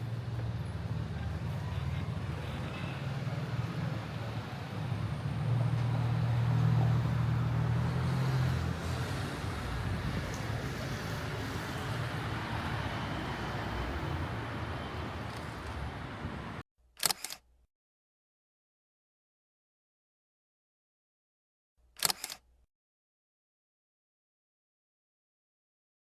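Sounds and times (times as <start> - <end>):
city traffic noise: 0.0 - 16.6
vehicle passing close by: 3.3 - 14.8.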